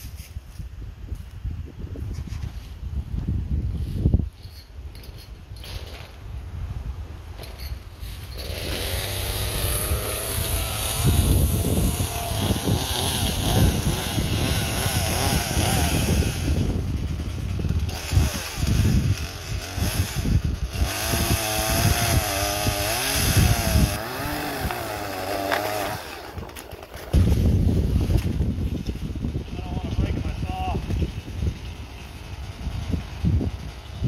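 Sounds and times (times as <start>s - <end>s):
chainsaw cutting wood: 7.4s - 29.0s.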